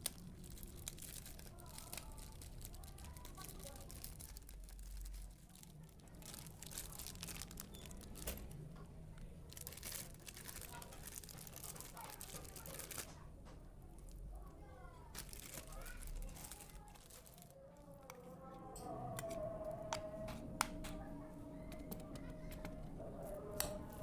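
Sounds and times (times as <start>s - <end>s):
packaging crinkling by hand: 0.0s - 24.0s.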